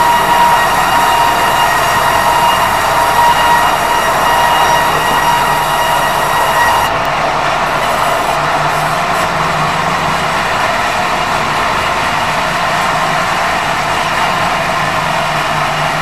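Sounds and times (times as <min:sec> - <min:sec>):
high squealing tone: 0:00.0 - 0:09.4.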